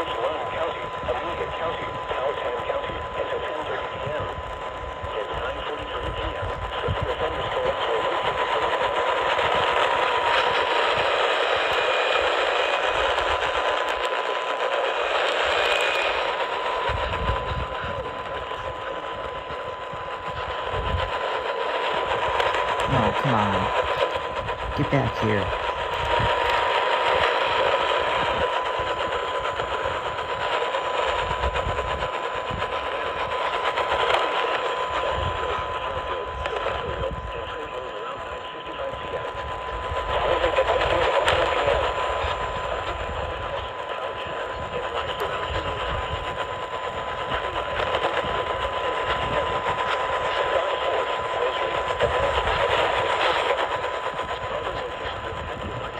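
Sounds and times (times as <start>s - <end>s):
radio static hiss and crackle: 0.0s - 55.9s.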